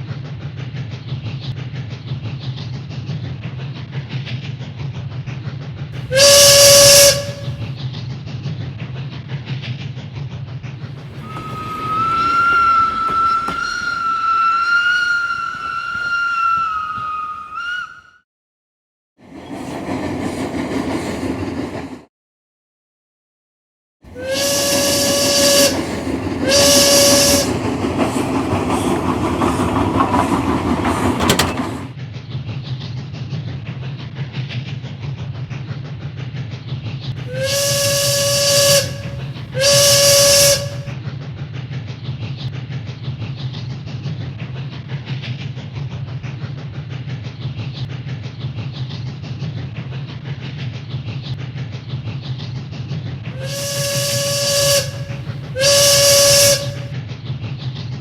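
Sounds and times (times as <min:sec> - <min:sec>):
short whistle blasts: 0:06.1 - 0:07.6, 0:11.2 - 0:18.2, 0:24.2 - 0:25.8, 0:26.4 - 0:27.6, 0:37.3 - 0:40.9, 0:53.4 - 0:56.9.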